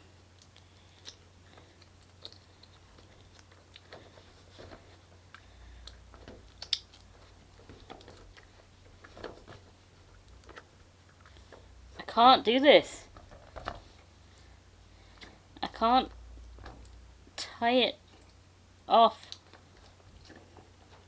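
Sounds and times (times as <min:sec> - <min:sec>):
fingers handling balloon neck: 0:00.3 - 0:12.1.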